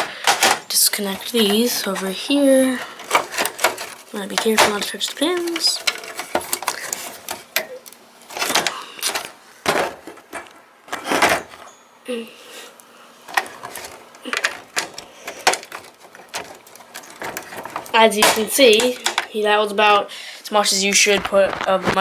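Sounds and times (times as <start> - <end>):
plastic and metal clicks: 13.3 - 19.3.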